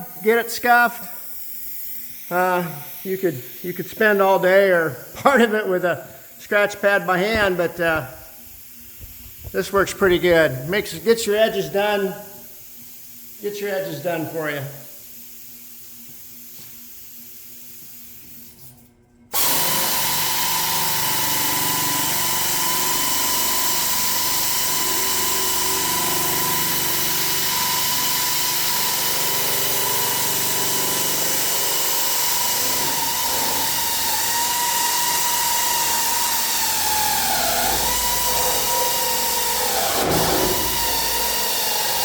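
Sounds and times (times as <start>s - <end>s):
power drill whining: 19.4s - 42.0s.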